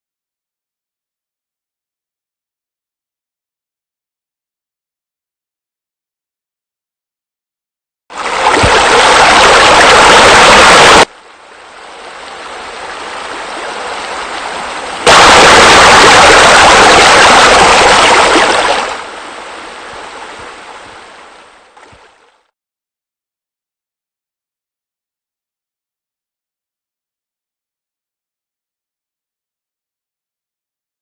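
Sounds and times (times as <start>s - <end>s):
quiet running water: 8.1s - 22.5s
waterfall rushing and splashing: 8.2s - 22.2s.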